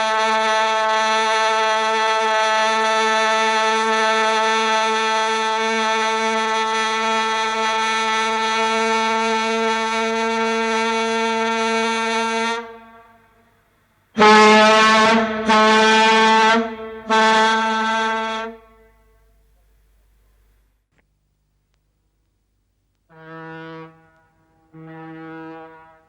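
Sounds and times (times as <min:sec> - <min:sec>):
ship's horn blasts: 0:00.0 - 0:19.5, 0:23.1 - 0:26.0.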